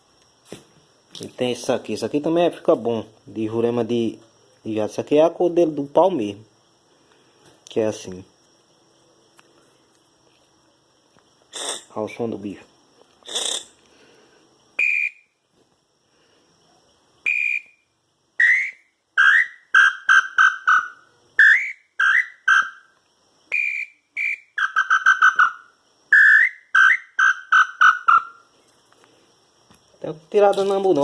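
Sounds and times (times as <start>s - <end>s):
wooden bird-call whistle blown: 11.5s - 11.9s, 13.3s - 13.8s, 14.8s - 15.4s, 17.2s - 28.5s.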